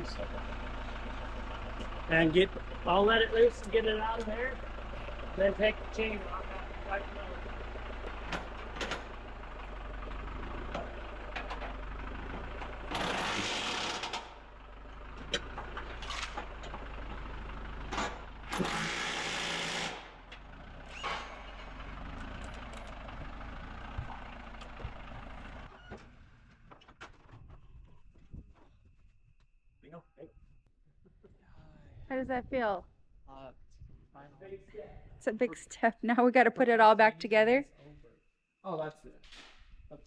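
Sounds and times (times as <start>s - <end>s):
metal clinks and tool clatter: 16.0s - 16.5s.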